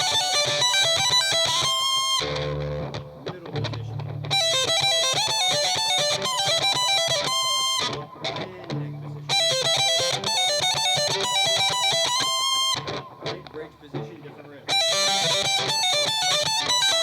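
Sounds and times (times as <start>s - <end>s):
distorted electric guitar lead riff: 0.0s - 17.0s.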